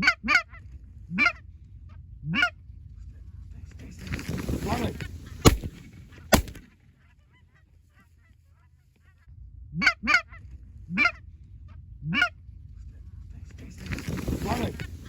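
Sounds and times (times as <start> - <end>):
goose honks: 0.0 - 1.4, 12.0 - 12.4
shotgun shot: 4.1 - 6.8.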